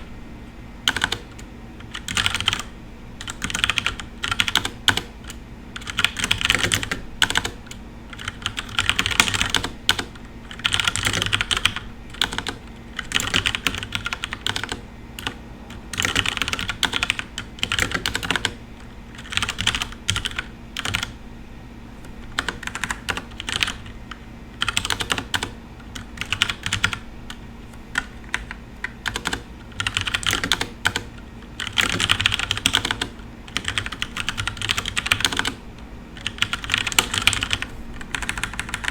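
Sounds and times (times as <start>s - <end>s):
mechanical keyboard typing: 0.8s - 21.2s, 22.3s - 35.6s, 36.2s - 38.9s.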